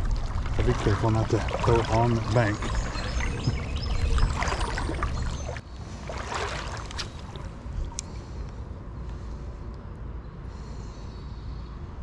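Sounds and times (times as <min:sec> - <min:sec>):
creek water trickling: 0:00.0 - 0:08.2.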